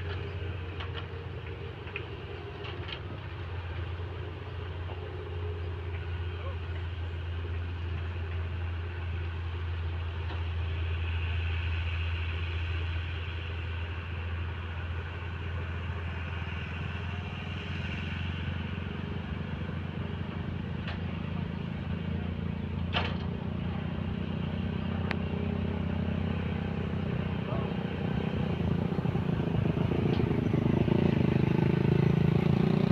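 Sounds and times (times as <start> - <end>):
heavy machinery diesel engines: 0.0 - 32.9.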